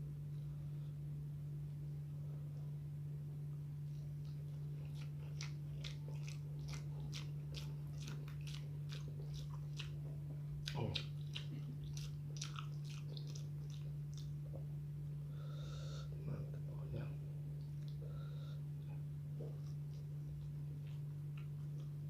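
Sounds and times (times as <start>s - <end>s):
wet chewing: 3.8s - 14.8s, 19.2s - 22.0s.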